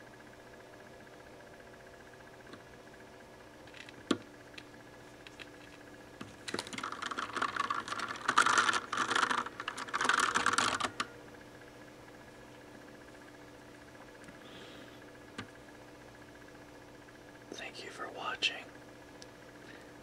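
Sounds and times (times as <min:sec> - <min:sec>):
mechanical keyboard keystrokes: 0:06.5 - 0:11.1.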